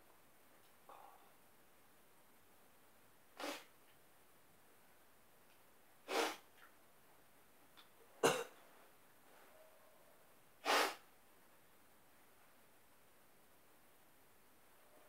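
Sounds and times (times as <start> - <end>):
person sneezing: 6.1 - 6.4, 10.6 - 11.0.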